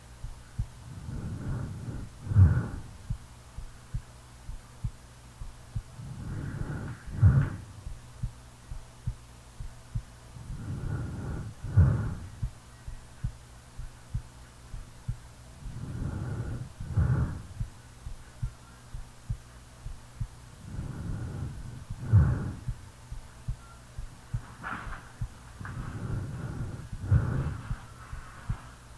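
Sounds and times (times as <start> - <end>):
heartbeat thumps: 0.0 - 28.8
low steady hum: 0.0 - 28.9
woman snoring: 0.9 - 3.0, 10.4 - 12.4.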